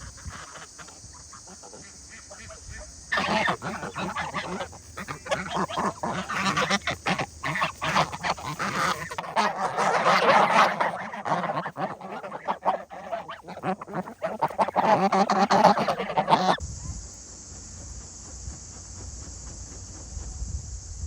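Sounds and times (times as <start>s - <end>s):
flock of fowl calling: 0.0s - 16.6s.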